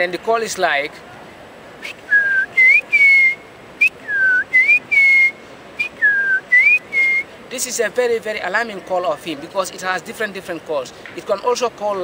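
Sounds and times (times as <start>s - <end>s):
man whistling bird call: 1.8s - 7.3s.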